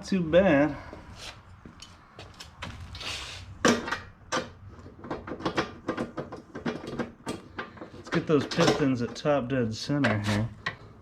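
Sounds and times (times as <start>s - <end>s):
metal engine parts and tools clinking: 3.7s - 11.0s.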